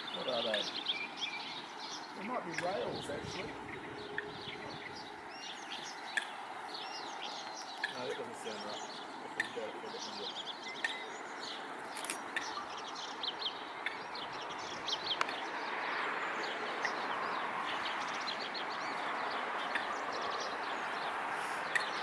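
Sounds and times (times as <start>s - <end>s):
small birds chirping: 0.0s - 22.0s
sharp clicks: 11.9s - 12.5s.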